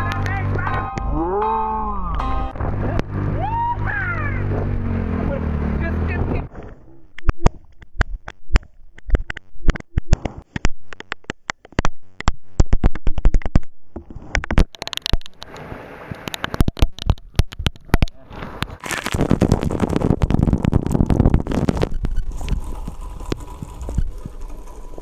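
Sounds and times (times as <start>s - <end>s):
raindrops tapping: 14.4s - 25.0s.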